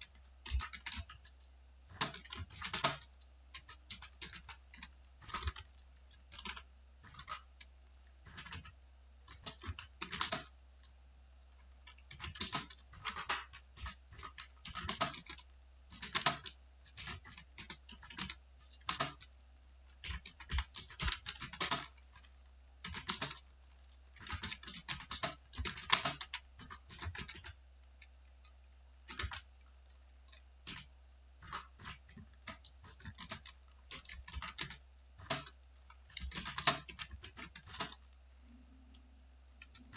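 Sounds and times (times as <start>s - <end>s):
typing on computer keyboard: 0.0s - 38.2s, 39.6s - 39.9s
faint steady low hum: 0.0s - 39.9s.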